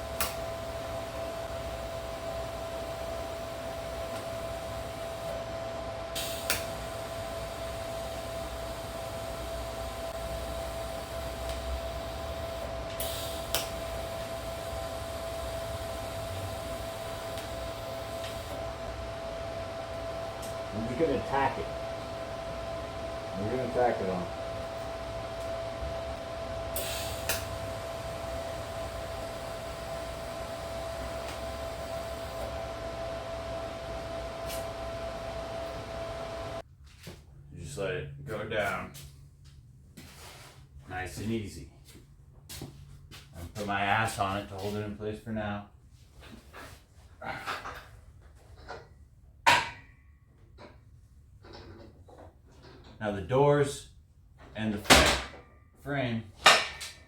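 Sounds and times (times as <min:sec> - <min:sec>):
fan humming: 0:00.0 - 0:36.6.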